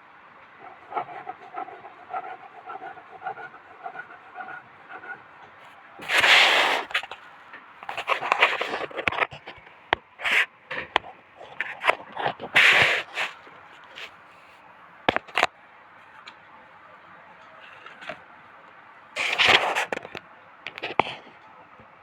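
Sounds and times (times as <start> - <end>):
scraping and rubbing noises: 0.6 - 7.2, 7.8 - 14.2, 19.2 - 21.3
loud scraping noise: 6.0 - 7.1, 19.2 - 20.0.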